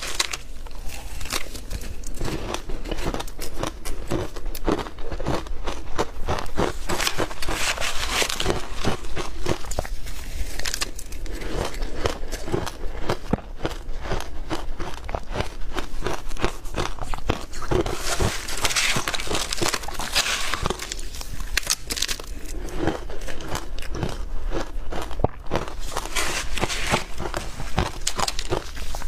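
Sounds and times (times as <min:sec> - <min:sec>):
chewing crunchy ice: 0:00.0 - 0:29.0.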